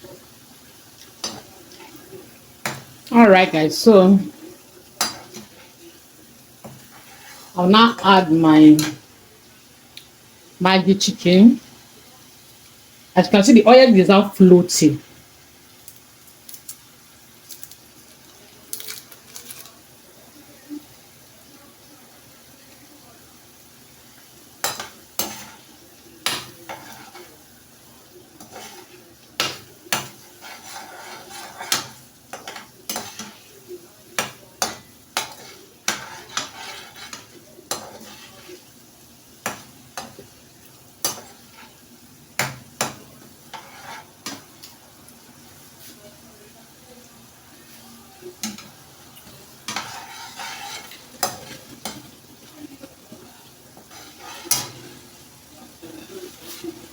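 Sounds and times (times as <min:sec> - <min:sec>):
faint sizzle: 0:00.0 - 0:56.9
spoon scraping and knocking pot: 0:29.4 - 0:33.4, 0:34.2 - 0:38.4, 0:49.7 - 0:52.1.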